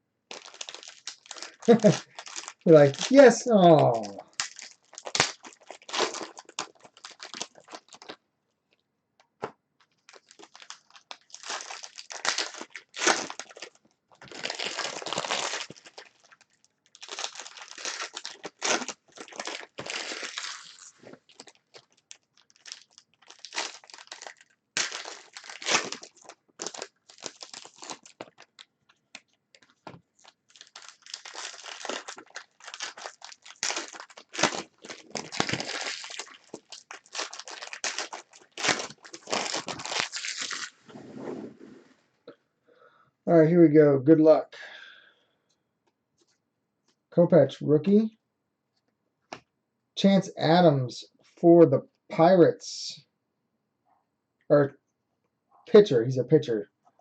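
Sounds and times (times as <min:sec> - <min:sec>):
card packs tearing open: 0:00.3 - 0:08.2, 0:10.1 - 0:28.6, 0:30.2 - 0:40.8
wrappers crinkling: 0:00.3 - 0:08.2, 0:09.8 - 0:40.9.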